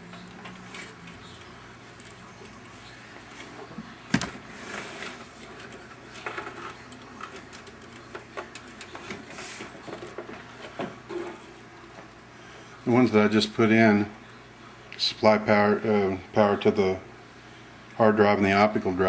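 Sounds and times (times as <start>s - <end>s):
cable rustling: 0.0s - 12.3s.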